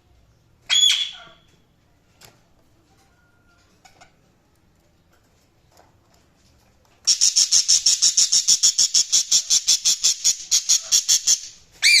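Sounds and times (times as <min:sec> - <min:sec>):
budgie chirping: 0:07.1 - 0:12.0.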